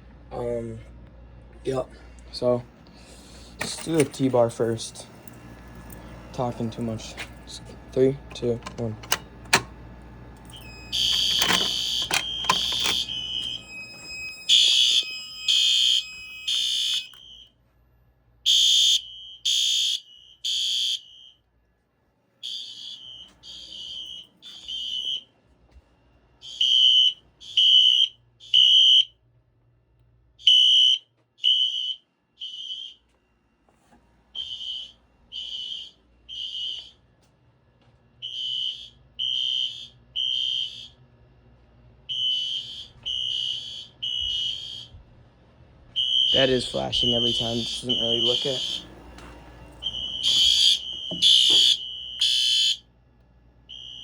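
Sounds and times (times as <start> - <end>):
fire alarm sounder beeping: 3.0 - 17.7, 18.4 - 21.5, 22.4 - 25.4, 26.4 - 29.2, 30.4 - 33.2, 34.3 - 37.0, 38.2 - 41.0, 42.0 - 45.0, 45.9 - 52.9, 53.6 - 54.0
clicks: 5.2 - 15.2.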